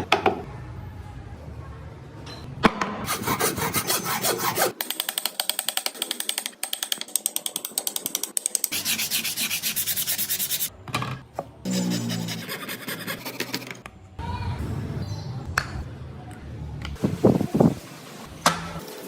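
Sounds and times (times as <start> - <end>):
sanding wood by hand: 3.1 - 4.7, 8.7 - 10.7.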